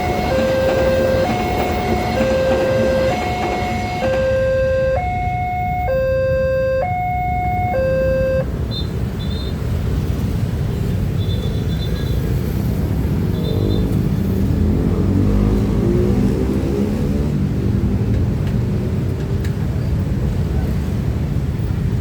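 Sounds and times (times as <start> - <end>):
level crossing two-tone alarm: 0.0 - 8.5
vehicle engines revving: 0.0 - 8.5, 12.5 - 19.5
road traffic rumble: 0.0 - 22.0.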